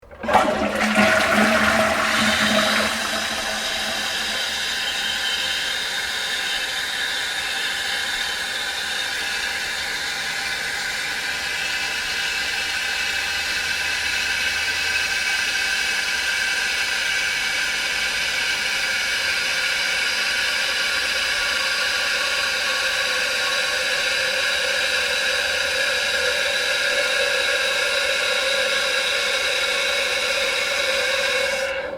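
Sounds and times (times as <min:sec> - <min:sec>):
toilet flushing: 0:00.0 - 0:08.8, 0:16.8 - 0:31.9
toilet tank refilling hiss: 0:00.0 - 0:31.9.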